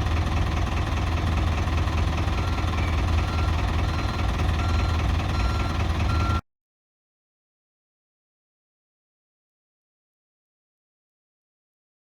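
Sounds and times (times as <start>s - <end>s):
backhoe loader engine idling: 0.0s - 6.4s.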